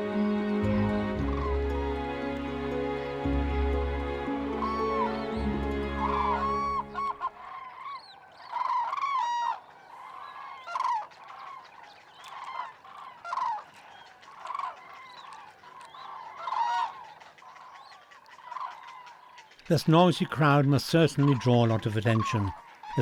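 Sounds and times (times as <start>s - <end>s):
cranes honking and trumpeting: 0.0s - 9.6s.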